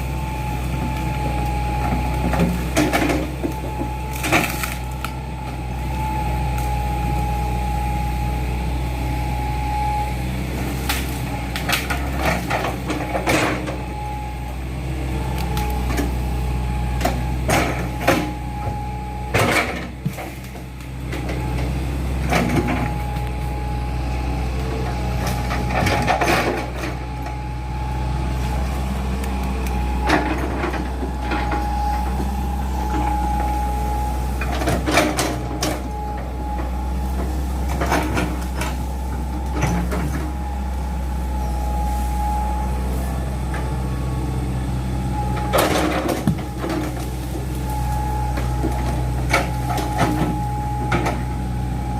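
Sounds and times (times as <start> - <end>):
excavator diesel engine running: 0.0 - 51.9
excavator knocks and clanks: 0.7 - 6.1, 10.6 - 14.1, 16.9 - 23.6, 24.6 - 27.4, 29.7 - 40.6, 45.2 - 51.6.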